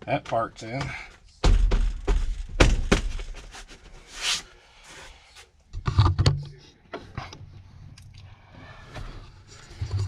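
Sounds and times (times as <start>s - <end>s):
dull thumps: 0.8s - 3.6s
sharp knocks: 1.4s - 3.4s.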